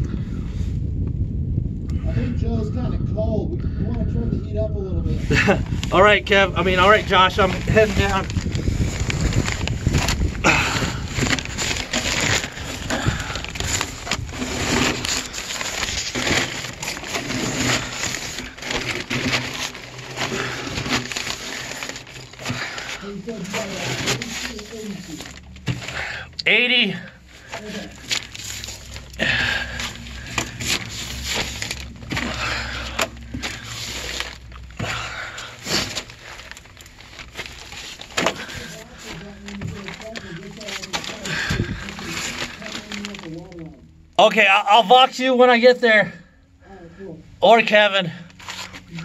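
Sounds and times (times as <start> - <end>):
low steady hum: 0.0 - 49.0
clothing scraping over dirt: 5.3 - 26.2, 27.2 - 43.8
scuffing and rustling of crawling: 27.3 - 43.6.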